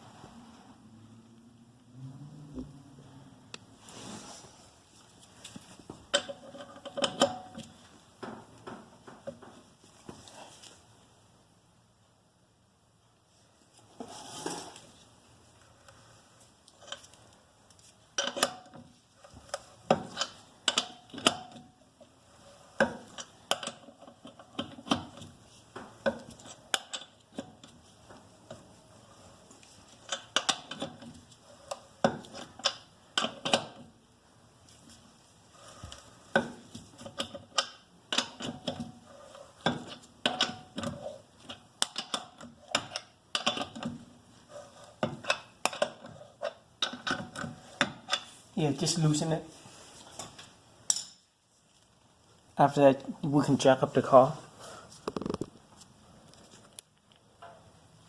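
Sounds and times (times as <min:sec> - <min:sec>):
lug wrench clinking on lug nuts: 0:18.2 - 0:18.8, 0:19.9 - 0:21.6, 0:39.6 - 0:43.9.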